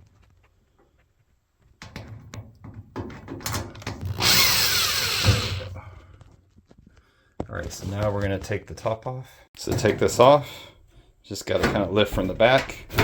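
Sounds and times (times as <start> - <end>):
power drill spinning: 4.0 - 5.8
handling clicks and knocks: 11.5 - 13.0.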